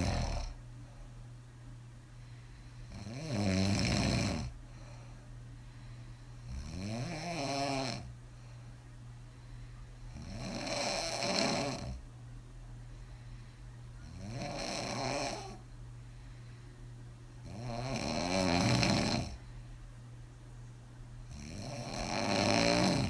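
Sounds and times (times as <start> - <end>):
woman snoring loudly: 0.0 - 0.6, 2.8 - 4.6, 6.4 - 8.1, 10.1 - 12.0, 14.0 - 15.6, 17.4 - 19.4, 21.3 - 23.0.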